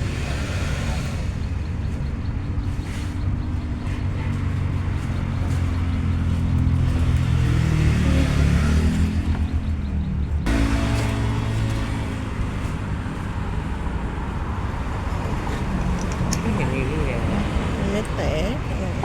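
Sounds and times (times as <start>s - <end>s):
diesel engine running and revving: 0.0s - 19.0s.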